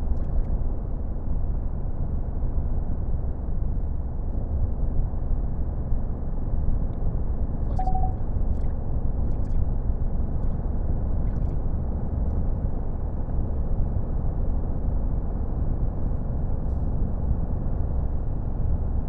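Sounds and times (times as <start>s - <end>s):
short high tone: 7.8s - 8.2s.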